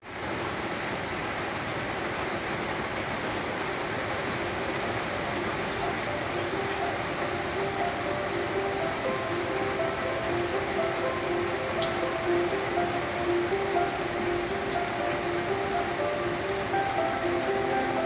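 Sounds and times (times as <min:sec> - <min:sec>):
steady rain falling: 0:00.0 - 0:18.0
faint held musical tones: 0:03.6 - 0:18.0.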